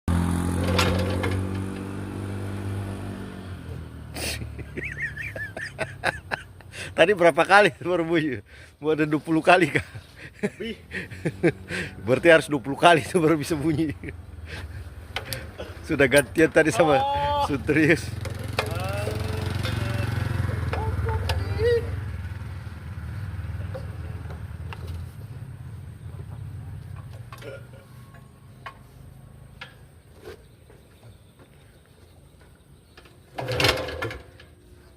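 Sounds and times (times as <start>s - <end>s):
small petrol engine humming: 10.2s - 12.2s, 17.1s - 31.6s
small petrol engine running: 17.4s - 24.7s.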